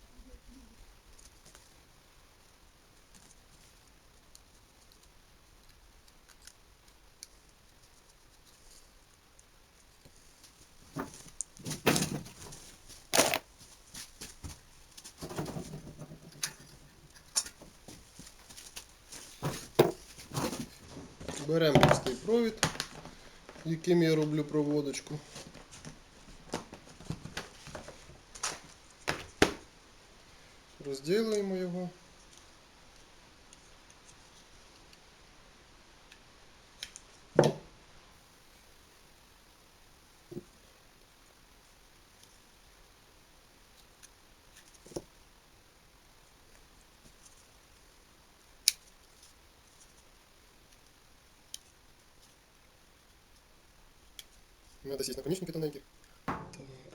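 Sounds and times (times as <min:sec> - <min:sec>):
rustling: 0:00.1 - 0:30.3, 0:38.2 - 0:56.3
clicks and knocks on electric drill: 0:13.2 - 0:13.4.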